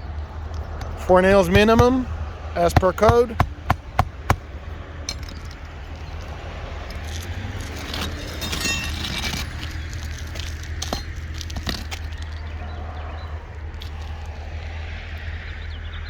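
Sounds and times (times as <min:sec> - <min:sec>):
shingles clicking and scraping: 0:00.5 - 0:12.5.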